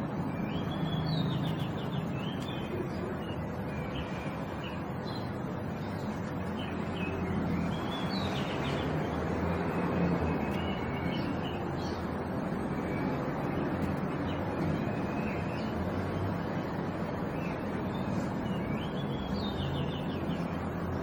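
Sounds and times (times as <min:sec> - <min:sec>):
bird calls chirping: 0:00.1 - 0:12.1.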